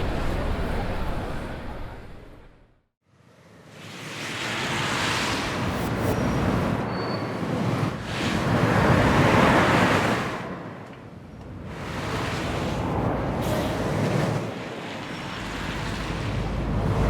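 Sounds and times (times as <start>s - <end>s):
rushing surf-like noise: 3.3s - 10.9s, 11.6s - 17.0s.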